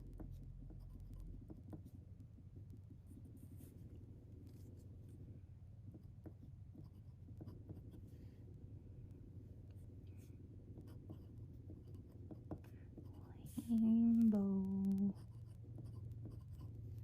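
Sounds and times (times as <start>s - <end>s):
low steady hum: 0.0s - 17.0s
pen scratching on paper: 0.1s - 2.0s, 5.9s - 8.2s, 10.2s - 17.0s.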